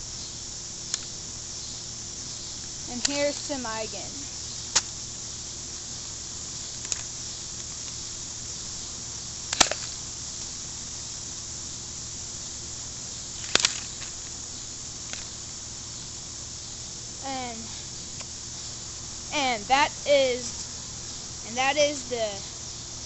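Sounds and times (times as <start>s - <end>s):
steady hiss: 0.0s - 23.0s
airsoft gun shots: 9.5s - 9.9s.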